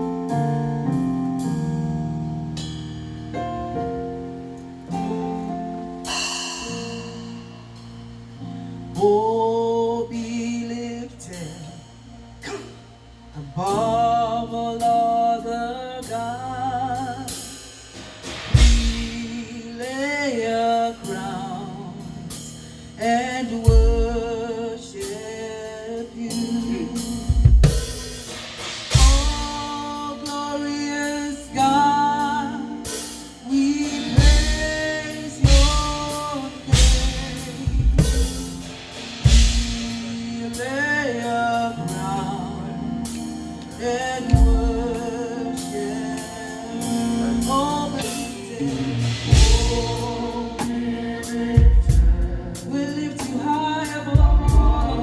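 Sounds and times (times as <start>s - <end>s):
band sustained chords: 0.0s - 55.0s
person singing: 9.0s - 17.6s, 18.6s - 28.3s, 28.9s - 55.0s
drum kit kick and snare: 17.3s - 20.1s, 23.7s - 24.3s, 27.0s - 30.5s, 32.9s - 40.9s, 44.3s - 45.8s, 46.8s - 55.0s.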